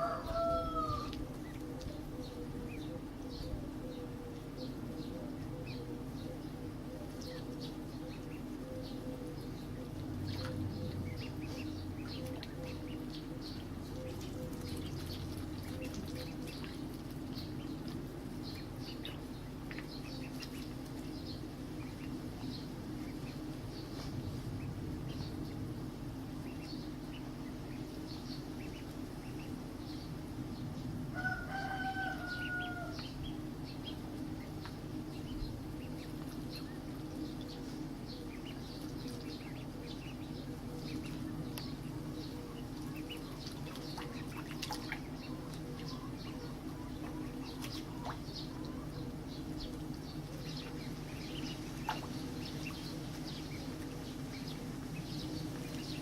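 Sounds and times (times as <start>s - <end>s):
low hum: 0.0s - 56.0s.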